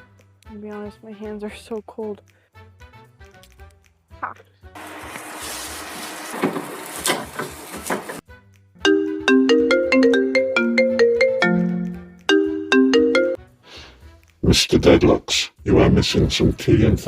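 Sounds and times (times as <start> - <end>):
phone ringtone melody: 8.8 - 13.4.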